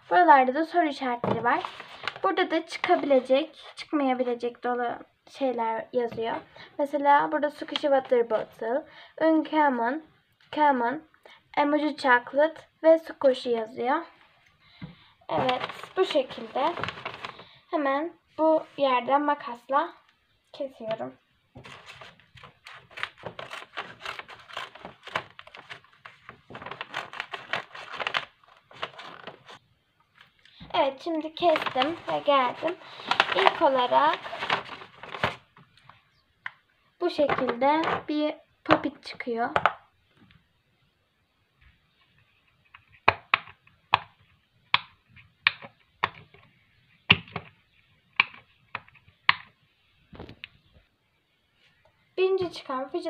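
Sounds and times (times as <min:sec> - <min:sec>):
paper crinkling: 0:01.4 - 0:03.3, 0:15.4 - 0:17.6, 0:21.6 - 0:36.0
scissors snipping paper: 0:21.8 - 0:25.9.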